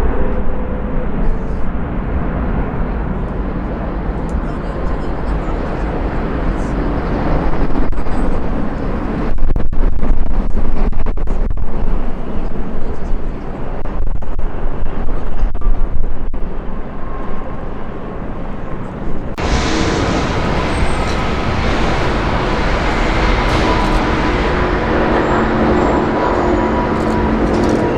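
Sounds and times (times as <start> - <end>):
jet engines roaring: 2.1 - 9.3, 19.3 - 27.9.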